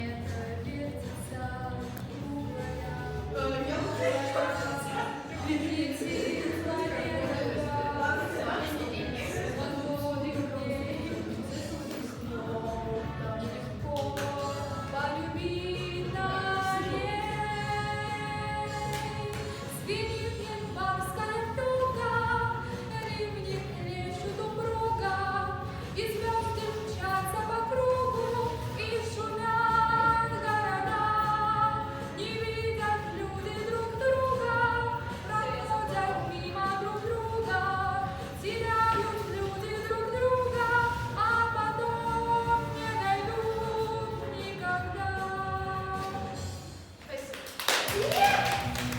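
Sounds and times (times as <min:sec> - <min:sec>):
woman singing slow melody: 0:09.6 - 0:46.4.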